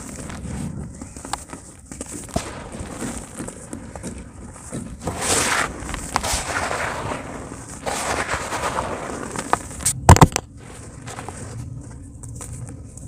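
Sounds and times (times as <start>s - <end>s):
cement chunks crumbling and crunching: 0.0s - 12.8s
loud sharp cracks: 2.2s - 10.6s.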